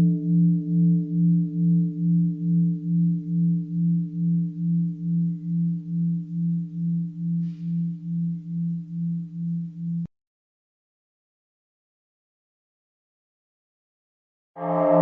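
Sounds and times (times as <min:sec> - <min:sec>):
bell ringing: 0:14.6 - 0:15.0.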